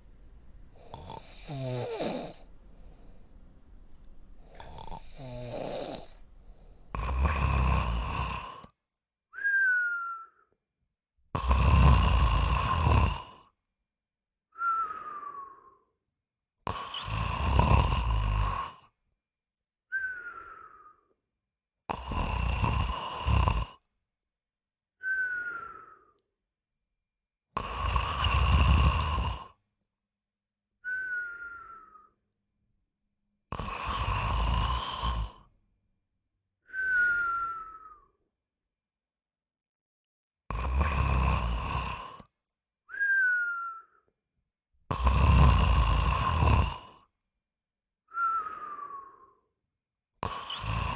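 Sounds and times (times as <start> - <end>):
person snoring: 0.7 - 3.1, 4.4 - 8.7, 11.3 - 13.5, 16.7 - 18.9, 21.9 - 23.8, 27.6 - 29.6, 33.5 - 35.5, 40.5 - 42.3, 44.9 - 47.0, 50.2 - 50.9
whistling breath: 9.3 - 10.7, 14.5 - 16.0, 19.9 - 21.2, 25.0 - 26.4, 30.8 - 32.4, 36.6 - 38.4, 42.9 - 44.2, 48.0 - 49.6.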